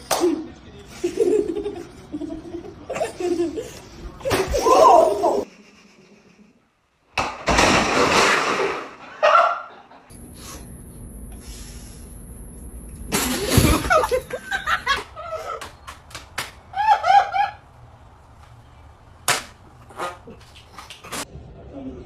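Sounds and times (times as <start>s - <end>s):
people laughing: 0.9s - 4.4s.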